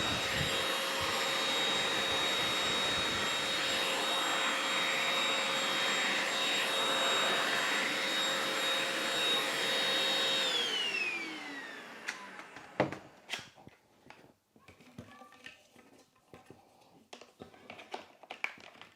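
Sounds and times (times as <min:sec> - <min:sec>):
handheld vacuum cleaner running: 0:00.0 - 0:13.5.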